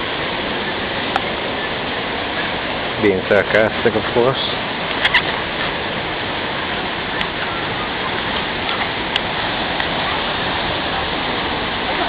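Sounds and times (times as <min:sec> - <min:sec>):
rushing water: 0:00.0 - 0:12.0.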